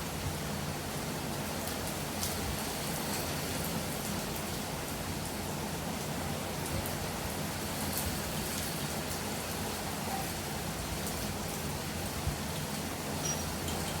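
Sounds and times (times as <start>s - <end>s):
steady rainfall: 0.0s - 14.0s.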